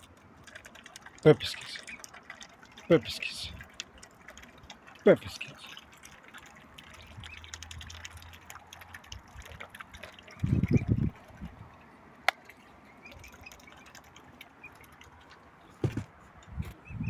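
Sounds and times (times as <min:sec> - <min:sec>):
birds pecking at biscuits: 0:00.0 - 0:10.4.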